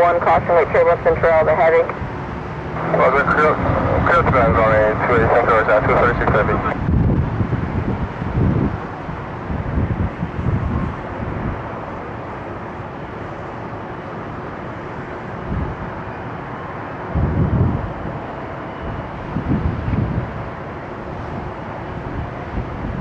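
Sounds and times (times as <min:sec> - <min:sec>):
low rumbles: 0:00.0 - 0:11.8
wind buffeting microphone: 0:00.1 - 0:13.5, 0:15.3 - 0:23.0
outdoor rushing noise: 0:00.4 - 0:23.0.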